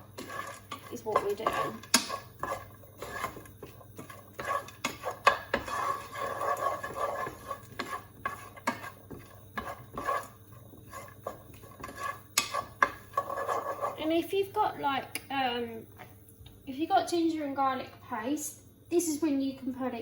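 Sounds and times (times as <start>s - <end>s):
utensil scraping frying pan: 0.0s - 14.2s
food frying in oil: 0.0s - 16.4s.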